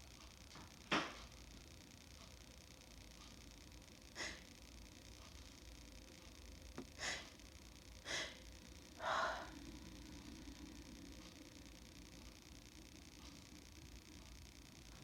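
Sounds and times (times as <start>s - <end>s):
woman sniffing: 4.2s - 4.4s, 7.0s - 7.3s.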